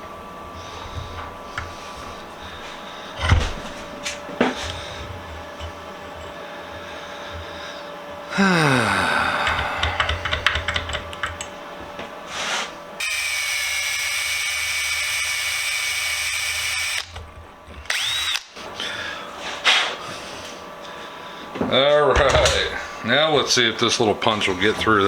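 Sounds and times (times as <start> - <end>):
electric drill whining: 13.0 - 18.6.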